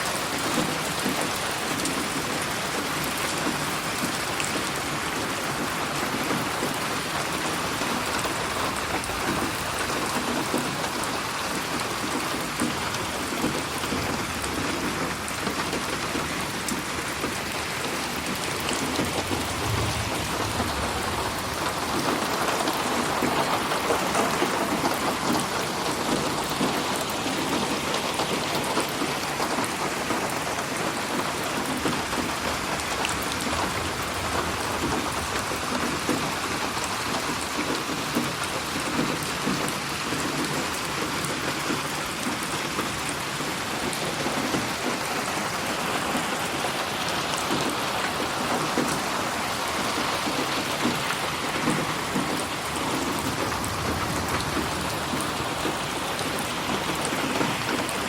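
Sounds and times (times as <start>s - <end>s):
heavy rain pattering: 0.0s - 58.0s
low rumble: 19.0s - 22.4s, 53.3s - 55.6s.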